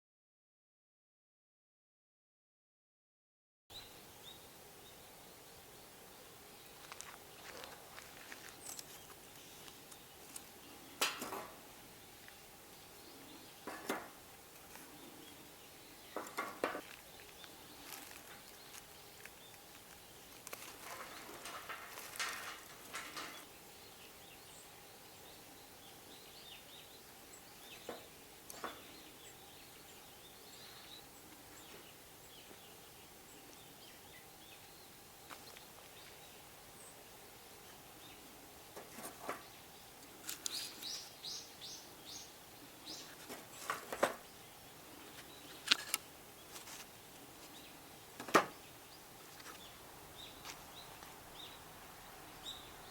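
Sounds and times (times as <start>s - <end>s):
bird chirping: 3.7s - 38.4s, 39.2s - 52.9s
campfire crackling: 14.2s - 23.6s.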